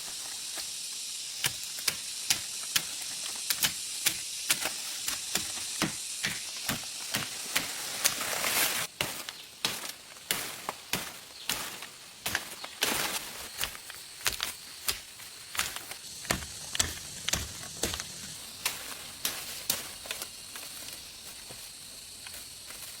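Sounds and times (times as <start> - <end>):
steady high hiss: 0.0 - 23.0
sharp clicks and knocks: 13.6 - 20.3.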